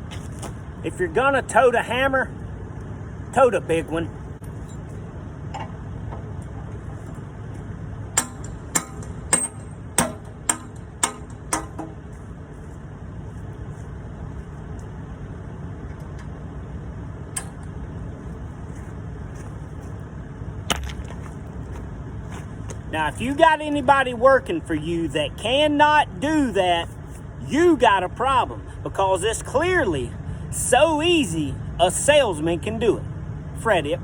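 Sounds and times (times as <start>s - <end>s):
low engine hum: 0.0s - 34.0s
hammer striking metal: 8.2s - 12.0s.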